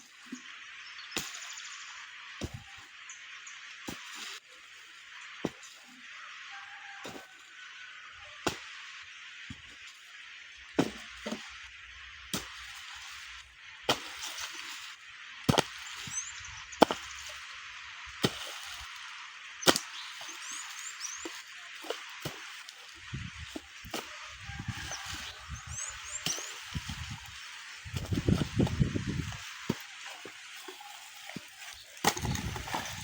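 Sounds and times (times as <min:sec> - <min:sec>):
steady outdoor hiss: 0:00.0 - 0:33.0
faint bird chirps: 0:19.4 - 0:32.9.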